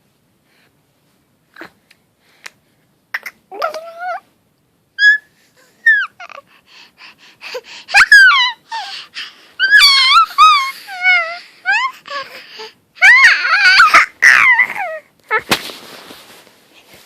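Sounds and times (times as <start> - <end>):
baby squealing: 5.0 - 6.4, 7.9 - 8.9, 9.6 - 12.4, 13.0 - 15.5.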